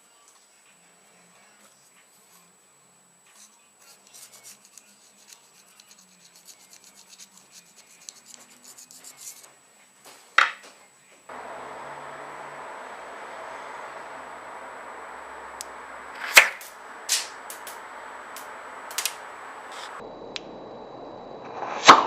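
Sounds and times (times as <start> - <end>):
rubbing and scratching handling noise: 3.2 - 9.6
steady hiss: 11.3 - 22.0.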